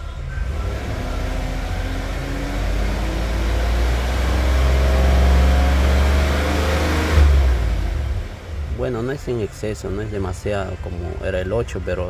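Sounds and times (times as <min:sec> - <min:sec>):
car engine running: 0:00.0 - 0:12.0.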